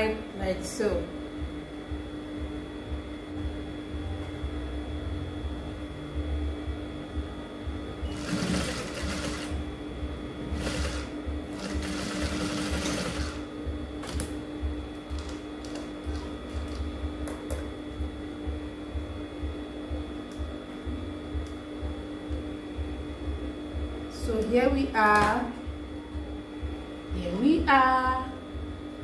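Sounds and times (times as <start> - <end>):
sewing machine stitching: 8.1 - 9.6, 10.5 - 13.4.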